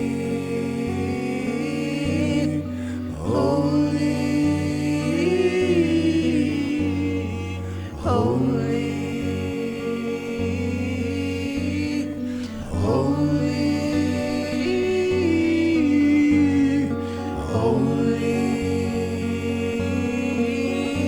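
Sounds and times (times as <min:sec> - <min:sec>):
person singing long notes: 0:00.0 - 0:21.0
sustained chords: 0:00.0 - 0:21.0.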